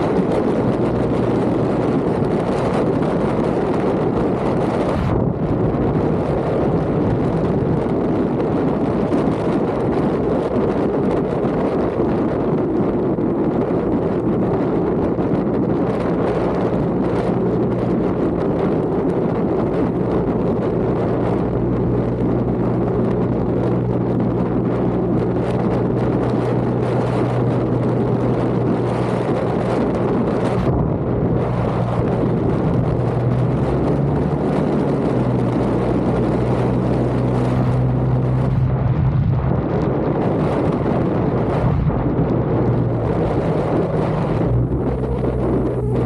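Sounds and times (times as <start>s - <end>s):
wind and road noise: 0.0s - 46.0s
car engine running: 15.2s - 46.0s.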